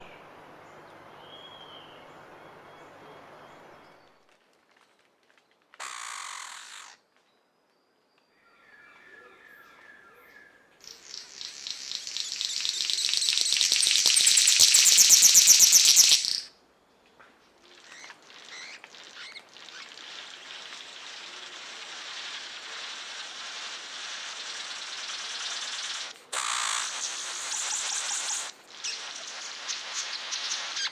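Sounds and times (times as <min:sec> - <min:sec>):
steady hiss: 0:00.0 - 0:04.0, 0:10.8 - 0:16.5, 0:17.7 - 0:30.9
bird buzzing rattle song: 0:05.8 - 0:07.0, 0:10.8 - 0:16.5, 0:17.7 - 0:30.9.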